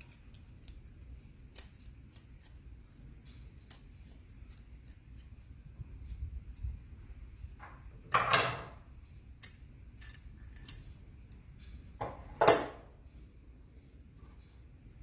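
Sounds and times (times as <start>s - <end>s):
light metal clinks: 9.4s - 12.8s.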